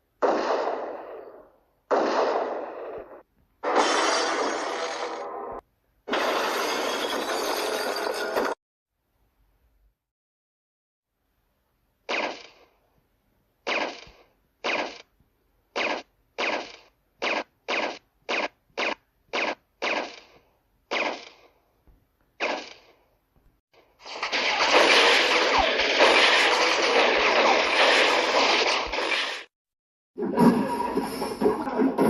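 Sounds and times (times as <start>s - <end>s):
single gunshots: 0.2s - 1.3s, 1.9s - 4.9s.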